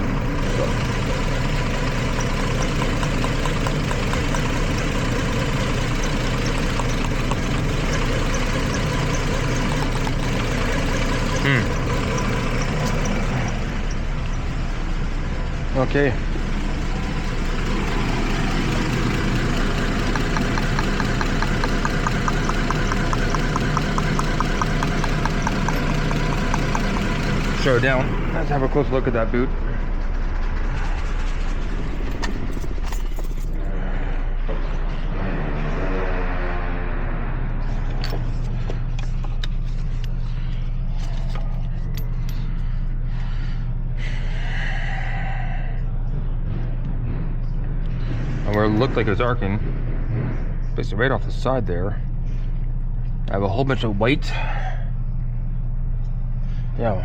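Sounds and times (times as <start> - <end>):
sharp even ticking: 0.0 - 14.7, 17.2 - 28.8
car engine idling with misfire: 0.0 - 36.3, 37.6 - 44.3
low mechanical hum: 0.0 - 57.0.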